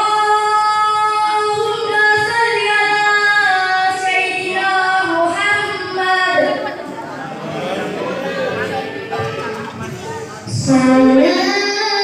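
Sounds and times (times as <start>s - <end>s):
woman singing devotional song: 0.0s - 6.8s.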